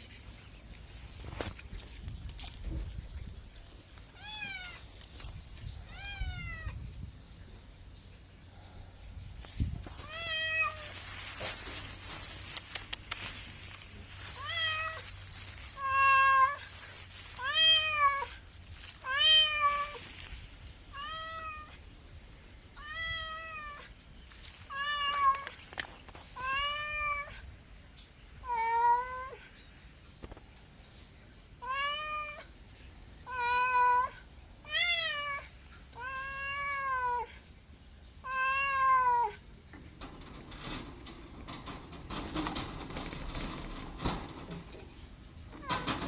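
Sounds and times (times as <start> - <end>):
cat meowing: 4.2 - 4.8, 5.8 - 6.8, 15.8 - 16.6, 17.4 - 18.3, 19.0 - 20.0, 20.9 - 21.7, 22.8 - 23.8, 33.3 - 37.3, 38.2 - 39.4.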